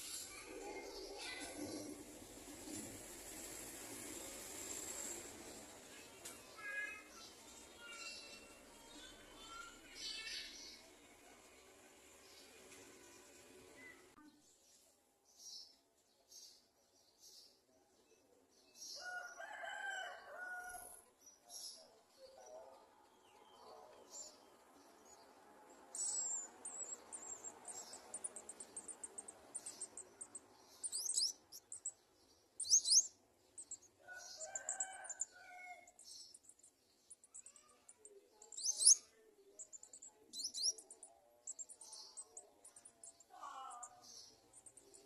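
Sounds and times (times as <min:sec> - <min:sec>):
sunbirds chirping: 0:00.0 - 0:14.8, 0:21.3 - 0:45.0
distant rooster crowing: 0:19.0 - 0:21.0, 0:34.0 - 0:36.0
bird sharp sweeping calls: 0:26.2 - 0:31.9, 0:32.6 - 0:33.8.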